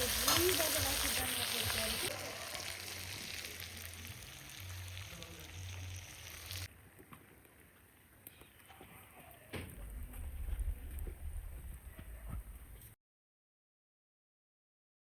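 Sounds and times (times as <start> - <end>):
food sizzling in a pan: 0.0 - 6.7.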